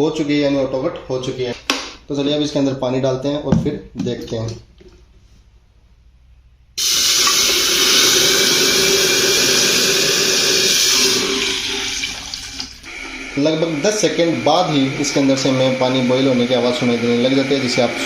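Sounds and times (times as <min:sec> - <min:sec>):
water pouring into kettle: 0:06.8 - 0:18.0.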